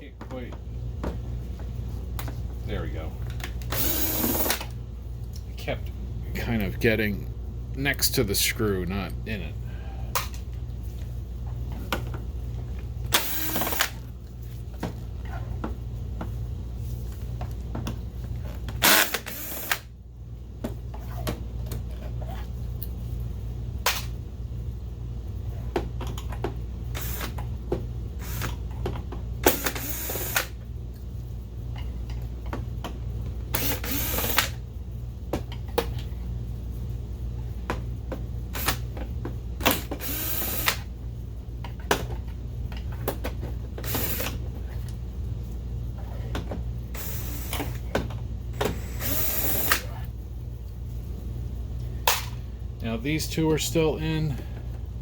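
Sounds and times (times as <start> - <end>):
steady low hum: 0.0 - 55.0
electric screwdriver driving: 3.7 - 4.6, 29.5 - 30.5, 40.0 - 40.8.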